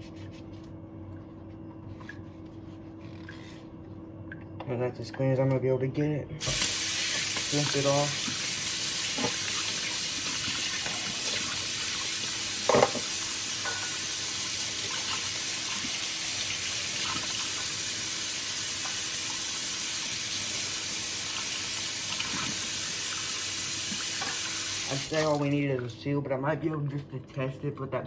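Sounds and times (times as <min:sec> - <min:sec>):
tap water running: 0:06.4 - 0:26.1.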